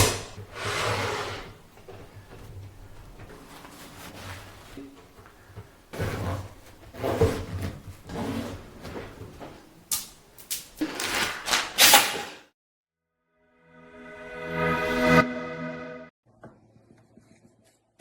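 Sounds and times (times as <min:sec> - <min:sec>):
knocks and scrapes of hardware: 0:00.0 - 0:09.7.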